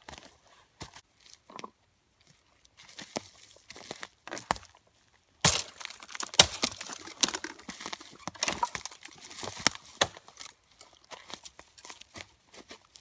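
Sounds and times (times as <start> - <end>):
dry wood cracking and snapping: 5.4 - 12.1.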